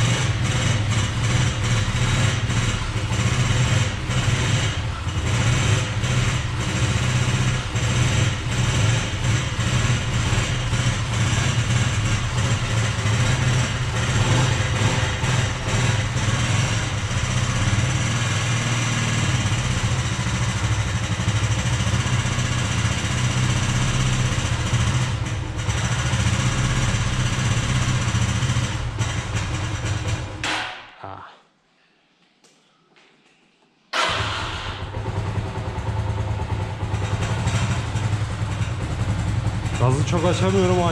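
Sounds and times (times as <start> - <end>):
motorcycle engine idling unevenly: 0.0 - 30.5, 34.0 - 40.9.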